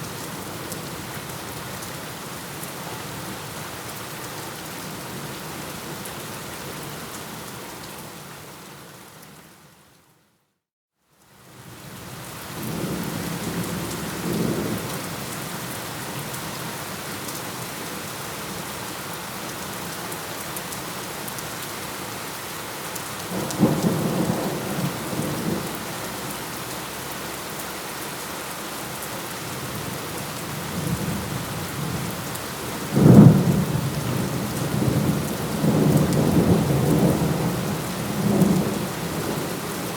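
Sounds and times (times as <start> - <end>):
heavy rain: 11.4 - 39.9.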